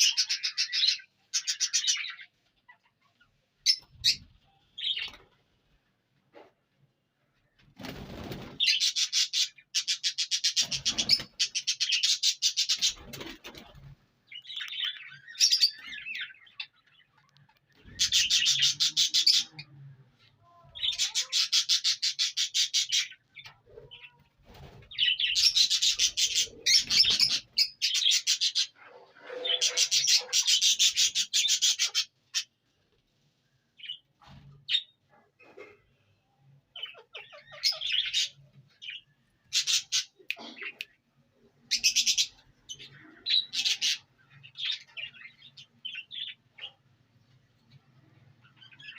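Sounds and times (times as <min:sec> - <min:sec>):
parakeet chattering calls: 0:14.4 - 0:19.6.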